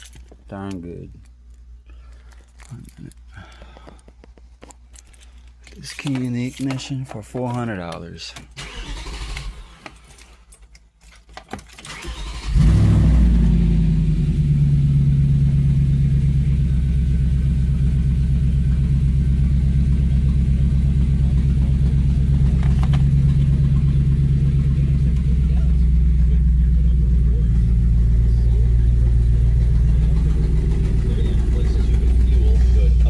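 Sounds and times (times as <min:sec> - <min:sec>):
car engine starting and idling: 0:08.5 - 0:10.4, 0:11.7 - 0:33.0.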